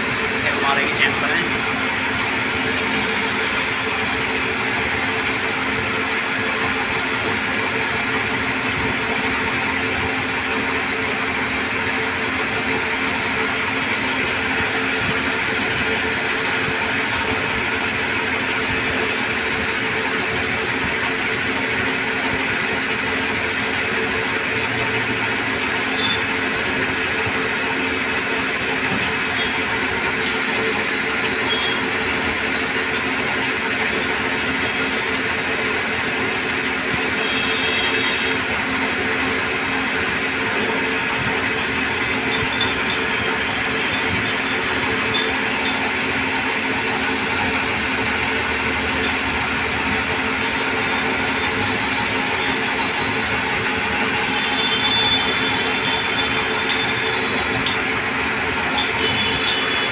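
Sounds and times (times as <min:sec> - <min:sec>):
lathe machine hum: 0:00.0 - 0:59.9.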